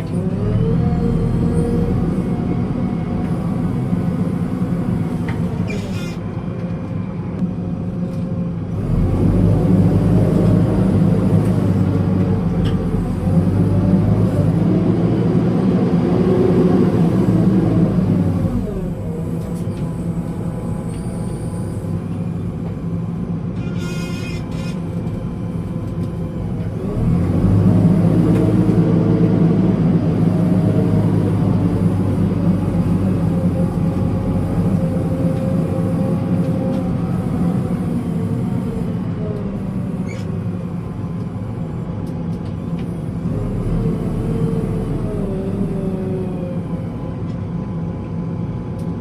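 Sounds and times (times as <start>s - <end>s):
diesel engine revving: 0.0s - 5.9s, 8.6s - 23.5s, 24.5s - 48.9s.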